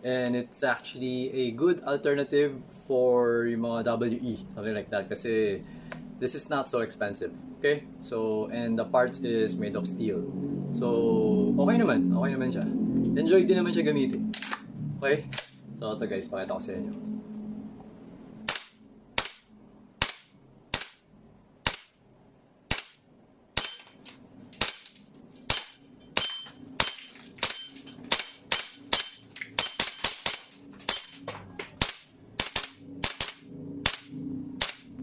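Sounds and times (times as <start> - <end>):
airsoft rifle shots: 18.5 - 21.0, 21.6 - 22.0, 22.7 - 23.0, 23.6 - 24.0, 31.8 - 35.0.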